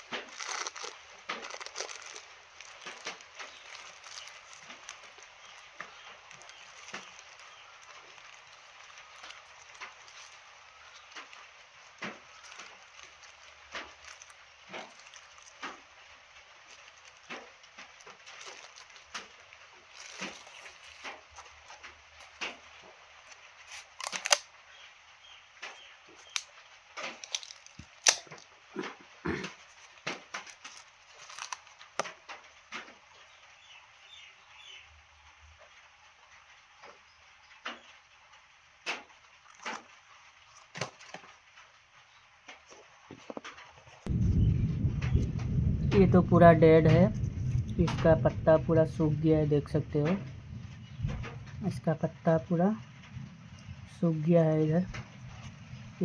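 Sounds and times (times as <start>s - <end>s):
plant packaging rustling: 0.0s - 34.8s, 38.8s - 56.0s
sharp snaps: 25.6s - 32.2s.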